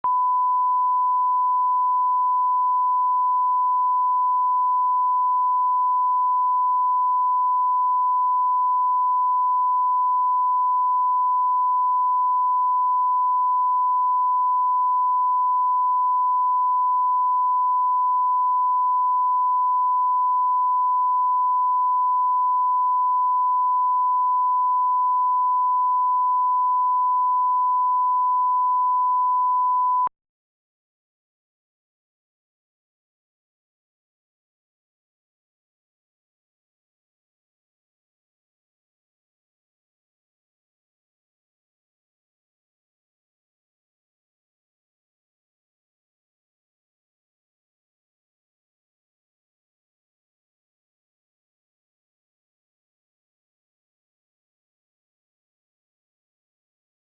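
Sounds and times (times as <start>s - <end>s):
sine wave test tone: 0.0s - 30.1s.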